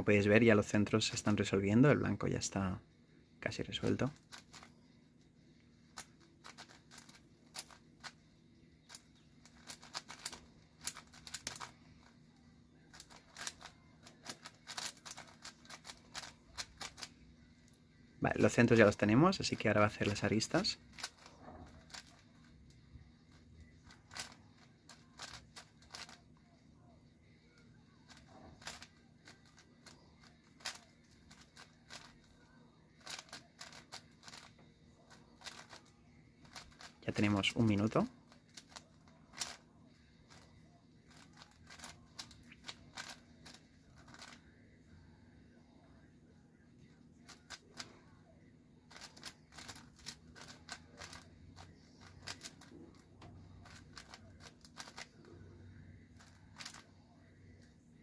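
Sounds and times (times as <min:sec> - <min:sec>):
puzzle cube plastic clicks: 0:03.8 - 0:04.7, 0:05.9 - 0:08.2, 0:08.8 - 0:12.2, 0:12.9 - 0:17.2, 0:18.4 - 0:26.3, 0:27.5 - 0:32.3, 0:33.0 - 0:44.5, 0:48.9 - 0:53.0, 0:53.6 - 0:55.4, 0:56.1 - 0:57.0.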